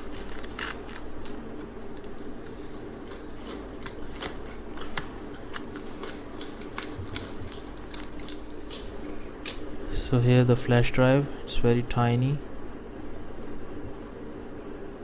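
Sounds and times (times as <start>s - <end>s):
plastic packaging being cut: 0.0s - 9.6s.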